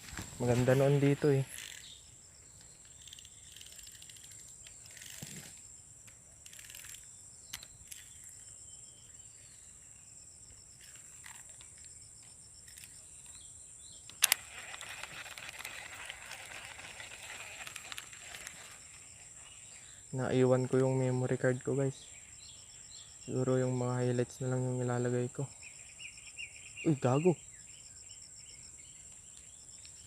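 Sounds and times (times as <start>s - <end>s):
crickets buzzing: 0.0s - 30.0s
rustling hiss: 10.8s - 23.0s.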